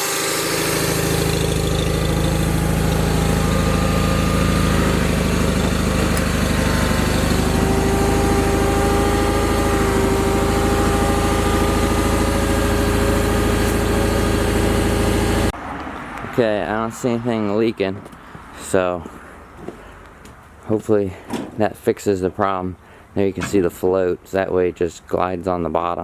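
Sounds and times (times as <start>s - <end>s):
steady whine: 0.0s - 15.6s
tractor engine idling: 0.0s - 15.6s.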